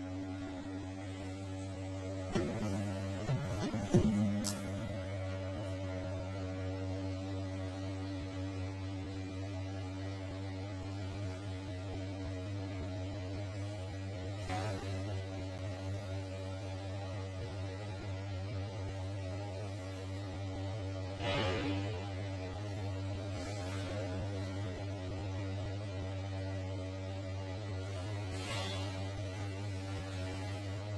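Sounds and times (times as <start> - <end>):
steady low hum: 0.0 - 16.8.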